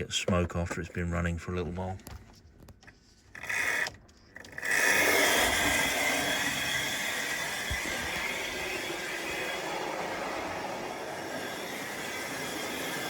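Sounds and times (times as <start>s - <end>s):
model locomotive whirring: 3.3s - 13.0s
rail noise: 4.6s - 13.0s.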